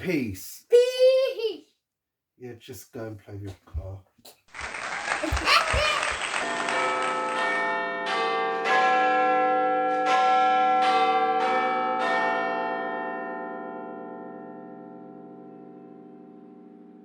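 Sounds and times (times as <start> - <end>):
bells ringing: 6.7 - 15.3.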